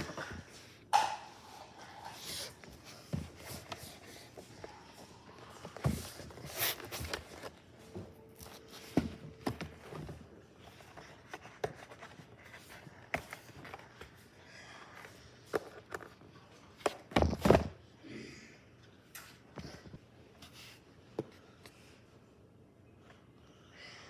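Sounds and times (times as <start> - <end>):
packaging taps and rustles: 5.4 - 7.7.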